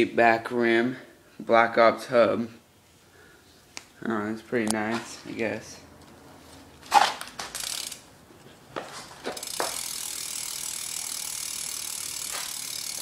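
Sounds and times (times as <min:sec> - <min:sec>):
bike hub ratchet ticking: 0:07.2 - 0:08.1, 0:09.2 - 0:13.0.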